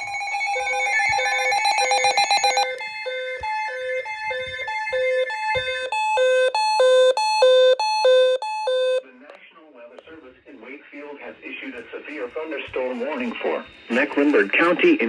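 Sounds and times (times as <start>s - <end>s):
fast warbling beep: 0.0s - 9.0s
steady repeating beep: 0.0s - 9.0s
two-pitch alternating beeping: 0.0s - 9.0s.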